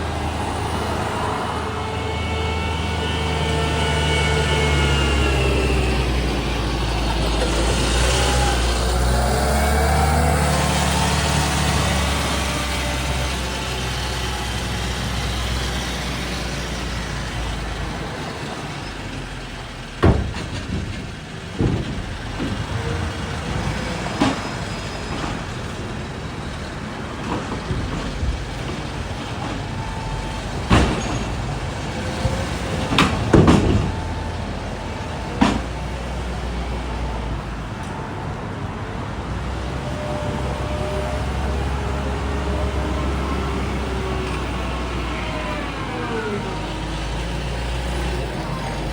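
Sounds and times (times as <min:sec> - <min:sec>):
diesel engine running: 0:00.0 - 0:48.9
heavy metal knocks and clanks: 0:18.6 - 0:38.0.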